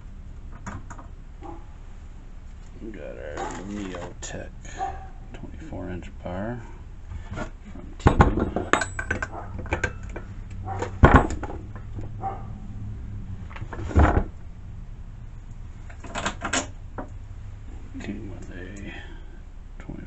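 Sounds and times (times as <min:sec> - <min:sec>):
metal chain clanks and rattles: 0:07.4 - 0:12.4.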